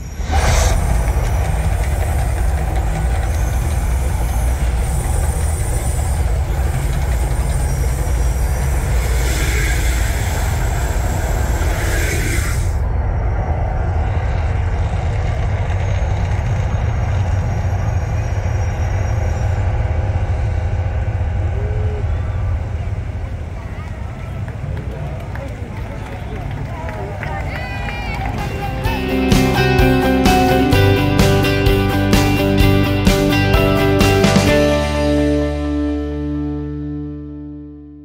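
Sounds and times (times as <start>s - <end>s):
hissing rush: 0.0s - 24.7s
deep steady rumble: 0.0s - 38.0s.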